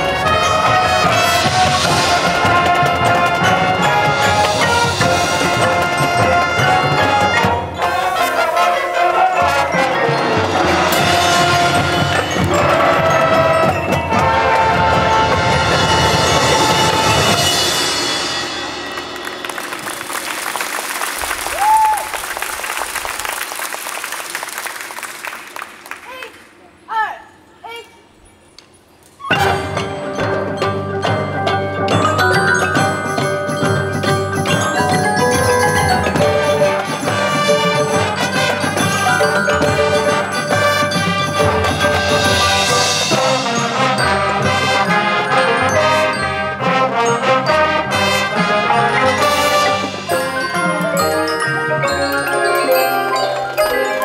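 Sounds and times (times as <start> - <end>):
mallet percussion: 0.0 - 21.8, 29.2 - 54.0
marching band playing: 0.0 - 23.8, 29.2 - 54.0
audience clapping: 18.8 - 26.5
short high cheer: 20.3 - 23.5.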